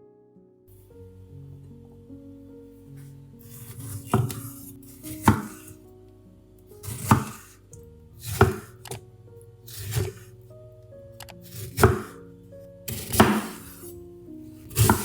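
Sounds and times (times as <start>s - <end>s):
soft background music: 0.0s - 15.0s
knife slicing food: 3.5s - 5.8s, 6.8s - 7.5s, 8.2s - 9.0s, 9.7s - 10.3s, 11.4s - 12.2s, 12.9s - 13.9s, 14.7s - 15.0s
knife knocking on cutting board: 5.1s - 5.6s, 7.0s - 7.4s, 8.4s - 8.7s, 11.8s - 12.2s, 12.9s - 13.7s, 14.8s - 15.0s.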